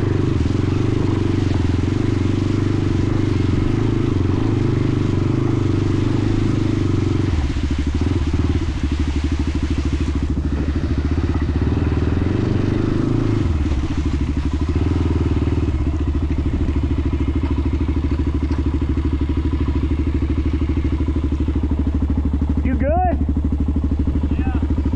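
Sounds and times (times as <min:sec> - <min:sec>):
atv engine chugging: 0:00.0 - 0:24.9.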